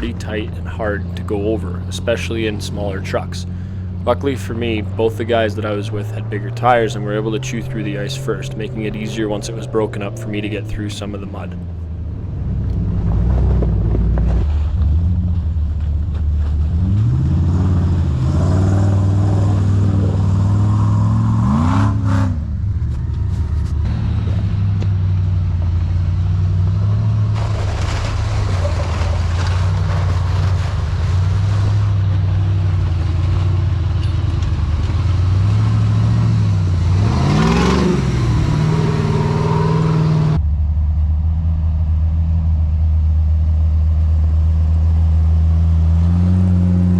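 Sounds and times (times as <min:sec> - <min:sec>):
off-road engine revving: 0:00.0 - 0:46.9
vehicle rushing through ice and mud: 0:00.0 - 0:46.9.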